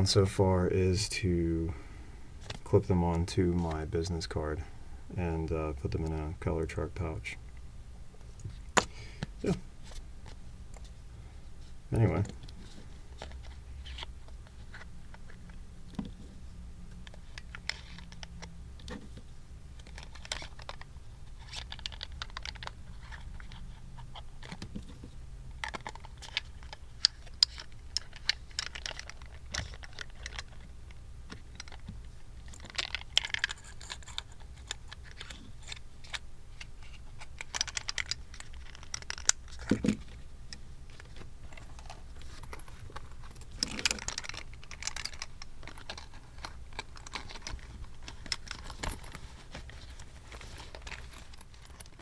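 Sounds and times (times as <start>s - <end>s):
steady low hum: 0.0s - 19.9s
pens clicking and rattling: 25.6s - 30.6s, 37.3s - 39.7s, 42.8s - 49.0s.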